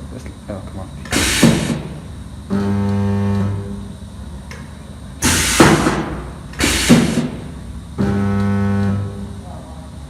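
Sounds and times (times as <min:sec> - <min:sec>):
welding machine buzz: 0:01.1 - 0:04.0, 0:05.2 - 0:09.4.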